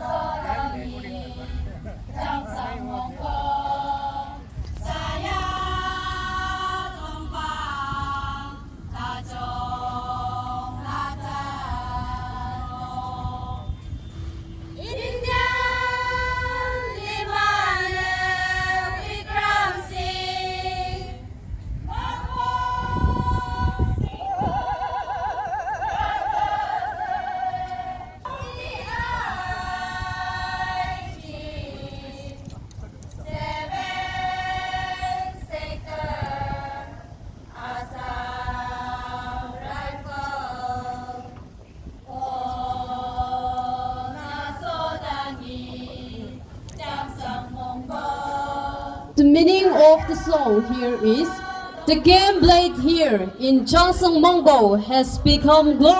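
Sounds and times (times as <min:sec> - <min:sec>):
high voices singing in unison: 0:00.0 - 0:14.0, 0:14.6 - 0:32.6, 0:33.2 - 0:55.9.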